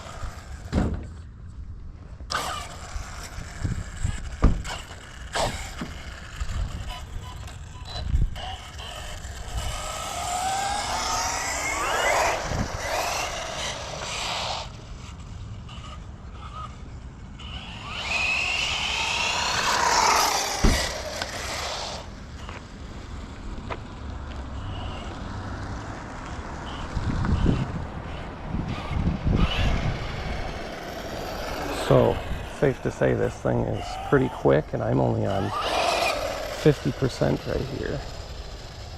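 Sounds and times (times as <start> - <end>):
rc car motor whine: 0.0 - 38.9
tyre noise: 17.4 - 22.7, 26.7 - 38.9.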